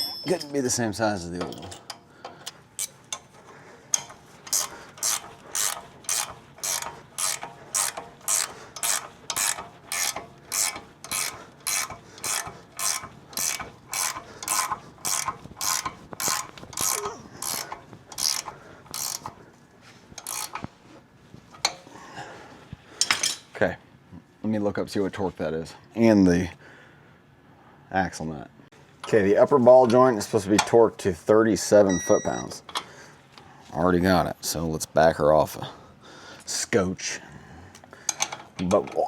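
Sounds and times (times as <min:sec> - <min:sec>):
ratchet wrench clicking: 0:03.9 - 0:19.3, 0:20.2 - 0:20.7.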